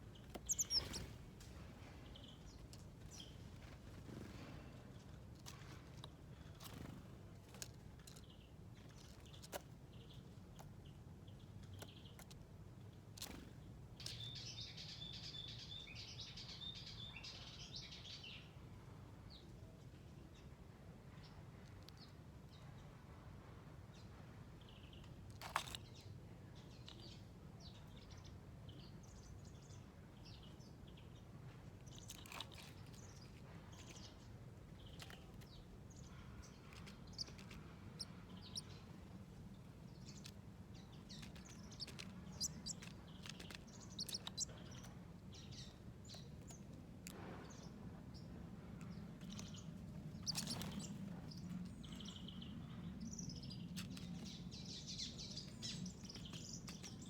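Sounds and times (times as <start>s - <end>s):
small birds chirping: 0.0s - 23.1s, 23.8s - 57.0s
faint steady low hum: 0.0s - 57.0s.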